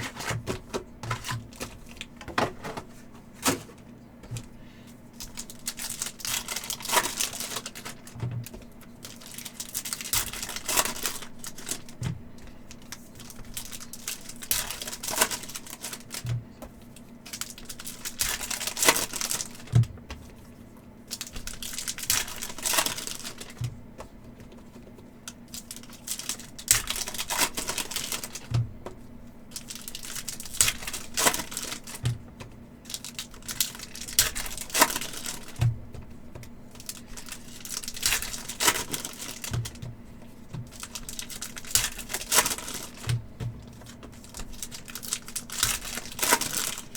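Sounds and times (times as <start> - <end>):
foil wrappers tearing and crinkling: 5.2 - 12.0, 12.7 - 16.3, 17.2 - 19.8, 21.1 - 23.6, 25.5 - 28.6, 29.5 - 32.1, 32.8 - 35.7, 36.7 - 39.9, 40.6 - 46.9.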